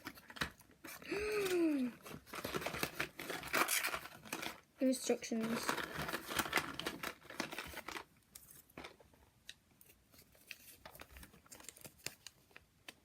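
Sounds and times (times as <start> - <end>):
packaging rustling and crinkling: 0.0 - 13.0.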